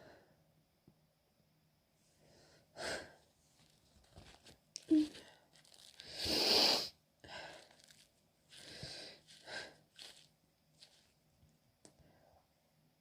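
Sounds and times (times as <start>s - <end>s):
woman's sharp catching breaths: 8.5s - 10.2s.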